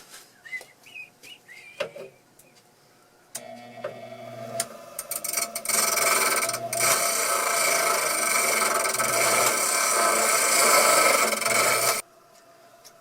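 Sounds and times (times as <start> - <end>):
power grinder grinding metal: 4.4 - 12.0.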